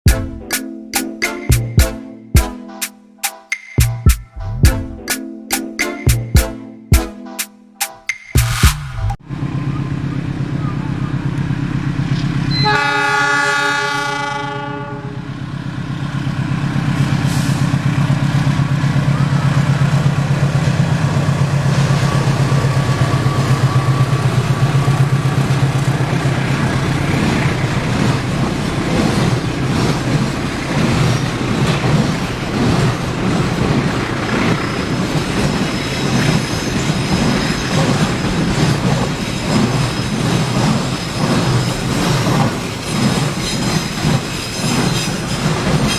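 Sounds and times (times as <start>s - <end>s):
horn sounding a chord: 12.5s - 15.3s.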